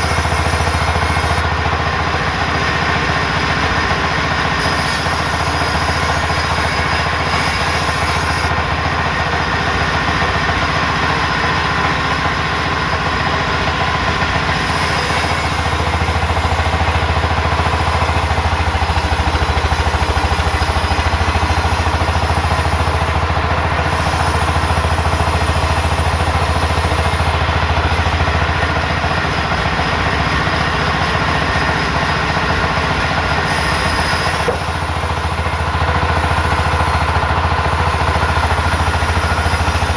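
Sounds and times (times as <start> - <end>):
grinding noise: 0.0 - 1.6, 4.4 - 8.6, 14.1 - 39.9
sawmill machinery humming: 0.0 - 39.9.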